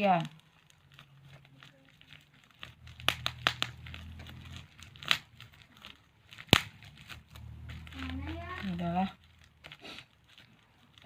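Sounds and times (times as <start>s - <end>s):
plastic crinkling and tearing: 0.0s - 11.0s
sharp clicks and snaps: 0.2s - 8.8s.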